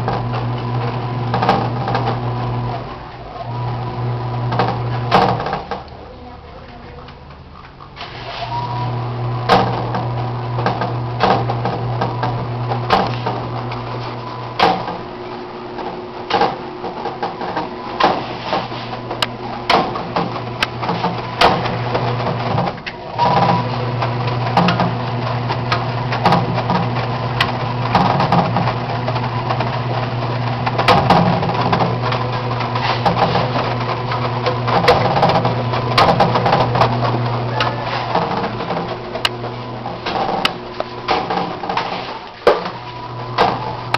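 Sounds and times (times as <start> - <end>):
washing machine motor hum: 0.0 - 43.9
washing machine knocking: 4.4 - 5.9, 9.4 - 13.5, 19.2 - 43.9.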